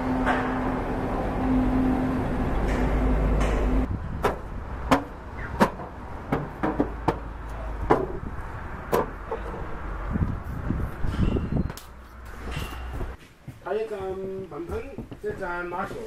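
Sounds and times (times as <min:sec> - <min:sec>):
sharp knocks and clacks: 0:02.6 - 0:07.3.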